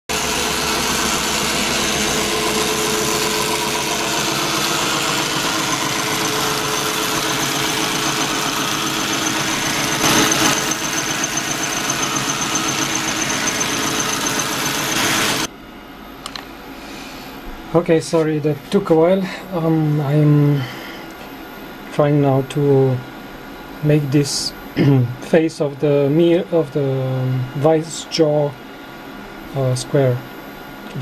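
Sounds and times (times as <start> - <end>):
milling machine cutting metal: 0.1 - 15.5.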